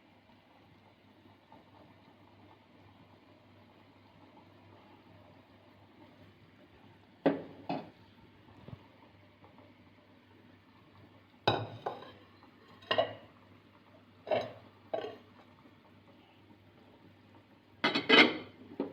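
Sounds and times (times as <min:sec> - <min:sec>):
utensil clinking against cookware: 0:14.3 - 0:15.2, 0:17.8 - 0:18.5.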